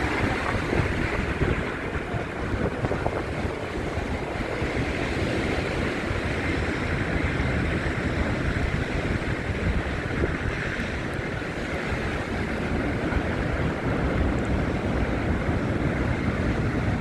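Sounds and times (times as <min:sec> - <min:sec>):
wind on microphone: 0:00.0 - 0:17.0.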